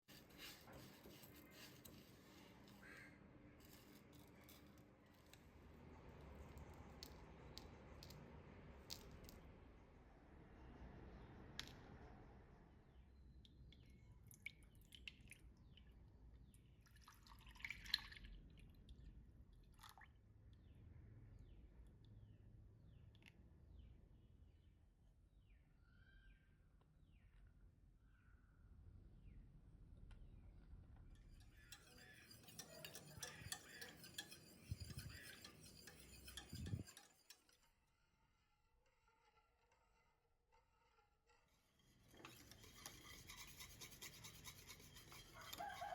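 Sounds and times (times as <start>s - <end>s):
utensil clinking in a bowl: 31.2s - 37.7s.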